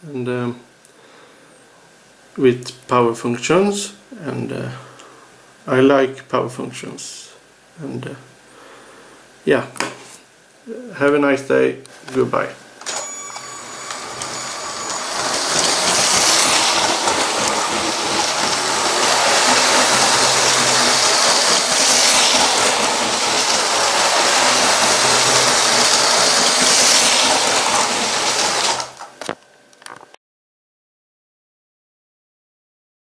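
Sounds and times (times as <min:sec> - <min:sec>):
low motor hum: 0:12.9 - 0:29.0
toy train rattling on plastic track: 0:13.0 - 0:29.1.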